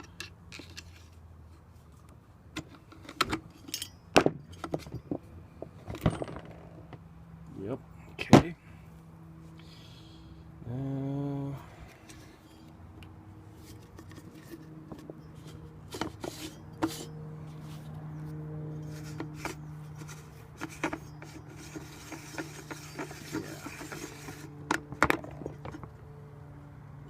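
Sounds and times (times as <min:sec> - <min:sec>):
plastic and metal parts handled: 0:13.6 - 0:18.0, 0:18.8 - 0:25.9.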